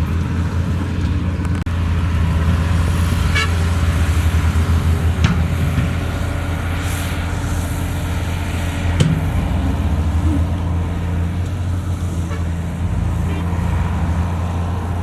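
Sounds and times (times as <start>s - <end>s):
heavy diesel engine rumbling: 0.0s - 15.0s
sharp knocks: 9.0s - 9.5s.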